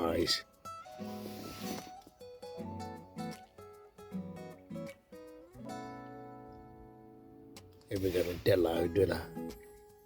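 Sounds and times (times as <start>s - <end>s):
plucked guitar melody: 0.0s - 10.0s
brief hiss: 0.7s - 2.3s, 7.9s - 8.6s.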